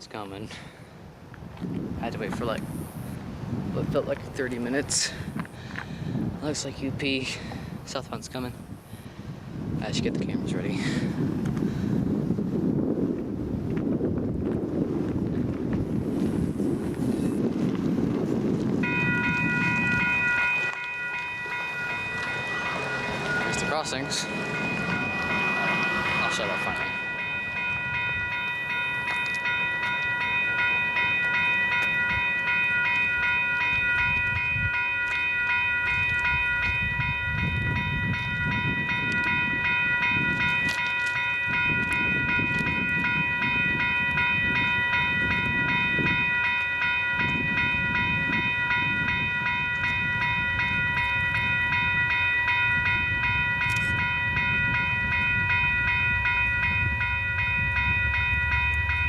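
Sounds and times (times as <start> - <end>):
train rumble: 13.1 - 59.0
crossing bell ringing rapidly: 18.7 - 59.0.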